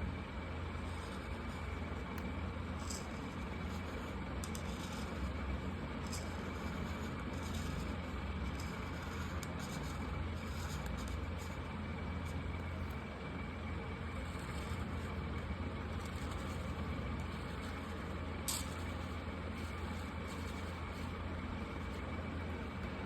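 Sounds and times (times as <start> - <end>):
steady low hum: 0.0 - 23.0
marker scratching on paper: 0.7 - 2.1, 2.7 - 12.6, 14.1 - 21.2.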